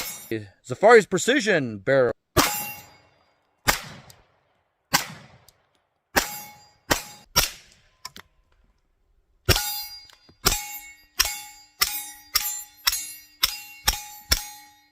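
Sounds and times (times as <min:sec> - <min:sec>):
metallic pistol parts clacking: 0:09.6 - 0:14.9.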